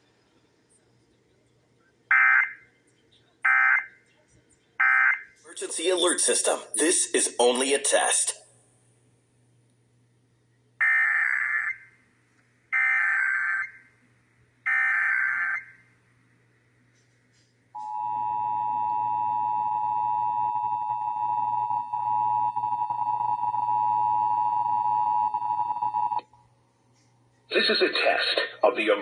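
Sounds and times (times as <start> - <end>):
two-tone attention signal: 17.8 - 26.2.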